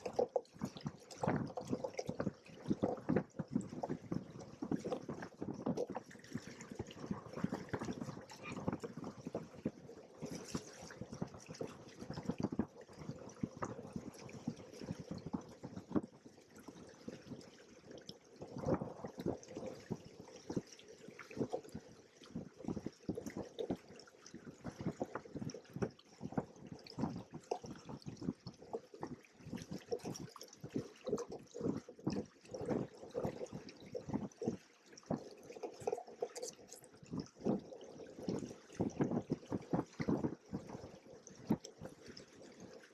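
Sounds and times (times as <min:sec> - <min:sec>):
water splashing against hulls: 0:00.0 - 0:13.4.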